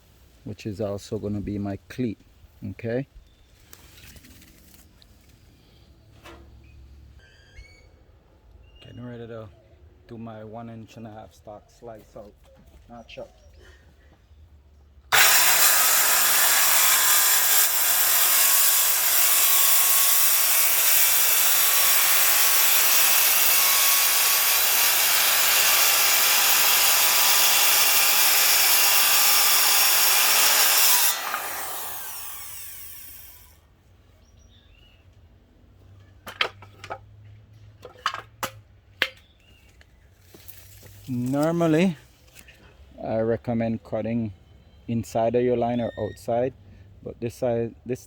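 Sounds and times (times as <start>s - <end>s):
power saw cutting wood: 15.1s - 33.5s
saw blade winding down: 15.1s - 33.6s.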